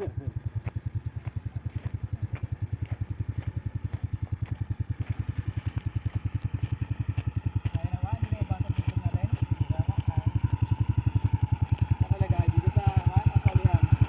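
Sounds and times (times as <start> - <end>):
small engine putting: 0.0 - 14.0.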